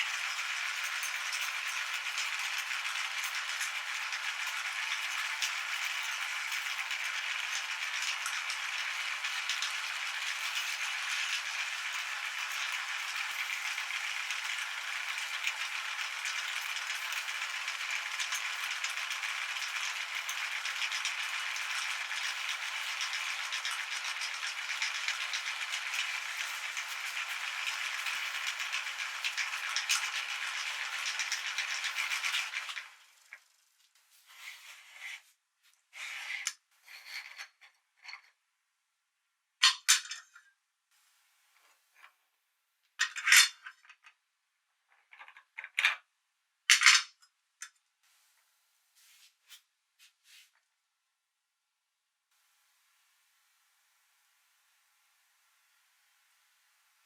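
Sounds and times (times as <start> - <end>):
meat grinder crackling rattle: 0.0 - 33.8.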